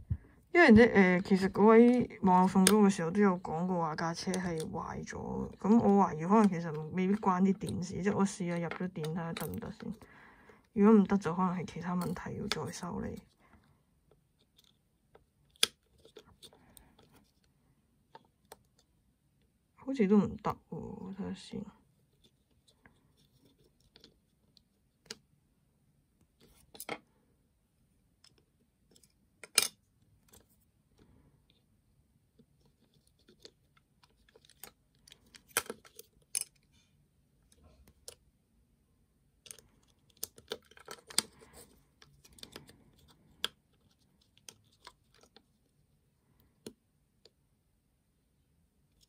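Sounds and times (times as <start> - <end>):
small plastic parts clicking: 1.2 - 3.5, 14.1 - 17.4, 32.7 - 36.6, 39.4 - 45.5.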